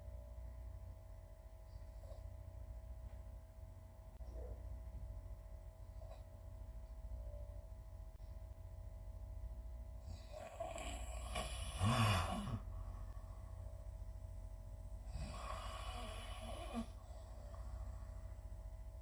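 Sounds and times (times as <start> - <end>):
person snoring: 10.1 - 12.7, 15.1 - 17.7.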